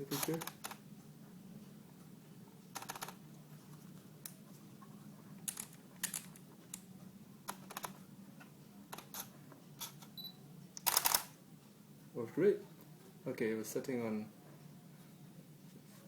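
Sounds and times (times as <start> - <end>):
camera shutter clicking: 10.8 - 11.3.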